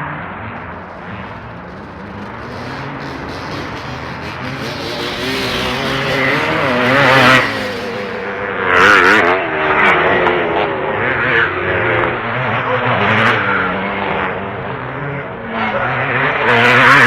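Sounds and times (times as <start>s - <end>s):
motocross bike engines revving: 0.4s - 9.5s.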